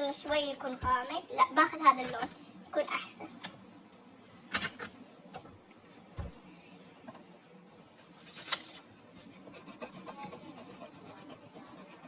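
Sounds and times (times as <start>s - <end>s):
pencil scratching on paper: 9.2s - 12.0s.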